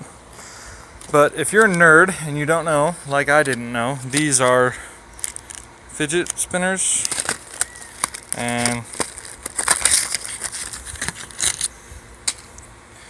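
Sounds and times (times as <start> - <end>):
crinkling: 3.1 - 12.6.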